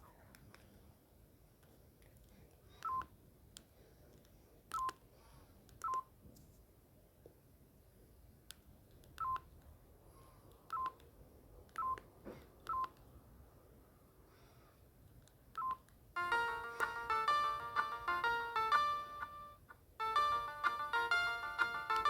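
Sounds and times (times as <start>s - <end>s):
phone keypad beeps: 2.8s - 3.1s, 4.7s - 5.0s, 5.8s - 6.1s, 9.2s - 9.4s, 10.7s - 11.0s, 11.8s - 12.0s, 12.7s - 12.9s, 15.6s - 22.0s.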